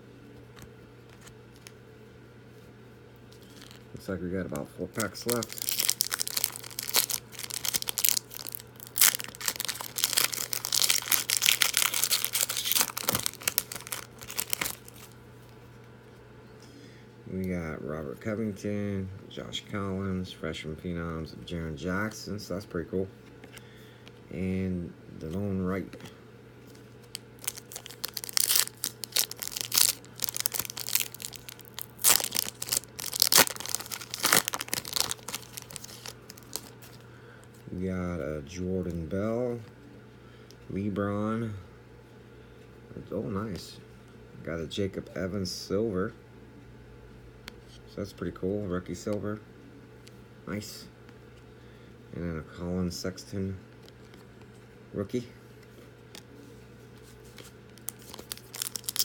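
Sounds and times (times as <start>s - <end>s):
wrapper crinkling: 3.4s - 3.9s, 4.9s - 15.2s, 26.7s - 37.0s, 57.2s - 59.0s.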